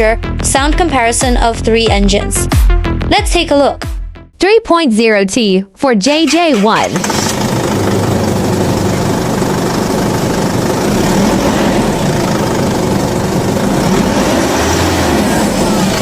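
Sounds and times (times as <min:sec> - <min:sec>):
diesel engine idling: 0:06.2 - 0:16.0.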